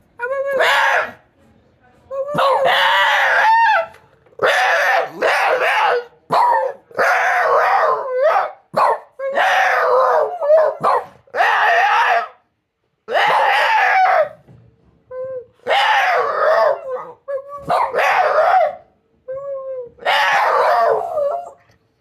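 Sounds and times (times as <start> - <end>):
dog howling: 2.2 - 8.6, 9.2 - 12.4, 13.1 - 14.4, 15.3 - 21.6.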